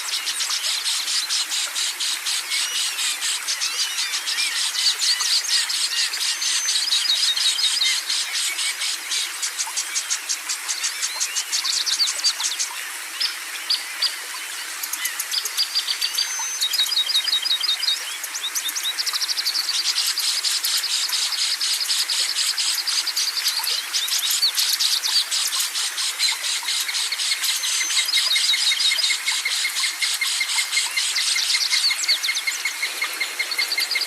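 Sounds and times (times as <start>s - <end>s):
songbirds chirping and trilling: 0.0s - 34.0s.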